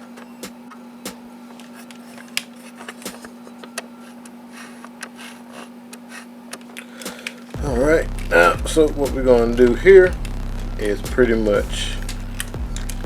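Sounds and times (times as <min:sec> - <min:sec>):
plastic parts clicking: 0:00.0 - 0:07.6
plastic parts scraping: 0:00.0 - 0:07.6
low hum: 0:07.6 - 0:13.0.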